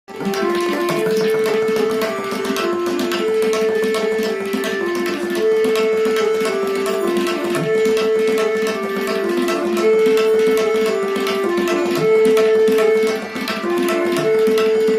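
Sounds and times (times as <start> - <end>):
repeating melody of held notes: 0.1 - 14.9
tabla playing: 0.1 - 14.9.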